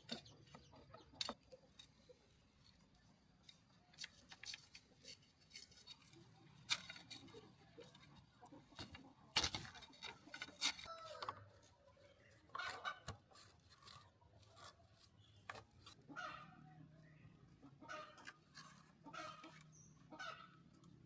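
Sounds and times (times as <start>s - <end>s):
chicken calls: 7.2s - 21.0s
scraping and rubbing: 11.6s - 16.2s, 18.0s - 19.7s.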